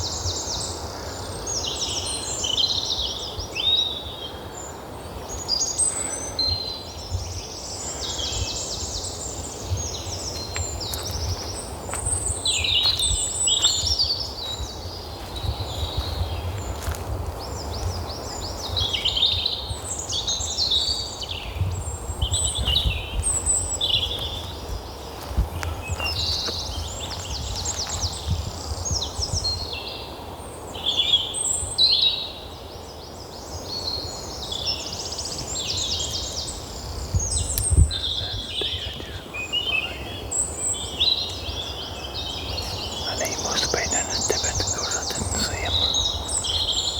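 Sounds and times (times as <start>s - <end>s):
songbirds chirping and trilling: 0.0s - 46.9s
low wind rumble: 5.0s - 30.0s, 35.0s - 46.9s.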